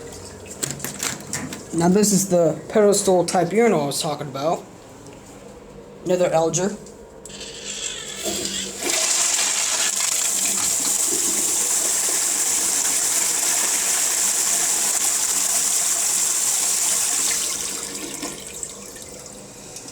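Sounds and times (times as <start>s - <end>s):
urinal flushing water rush: 7.3s - 19.9s.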